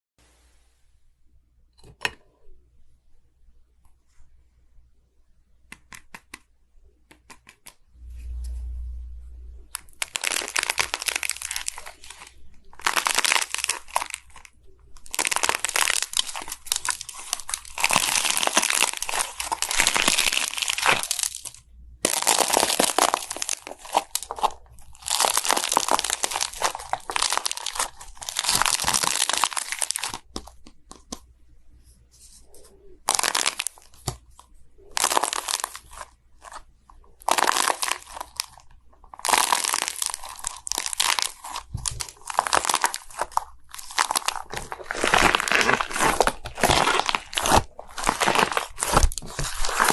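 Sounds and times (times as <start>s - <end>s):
slime crackling and crunching: 9.7s - 31.2s, 32.8s - 49.9s.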